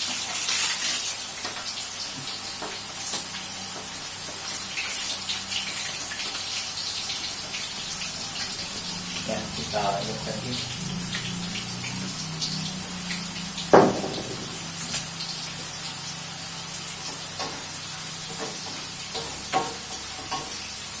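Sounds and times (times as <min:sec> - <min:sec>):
oil sizzling in a frying pan: 0:00.0 - 0:21.0
utensil clank: 0:13.7 - 0:15.0.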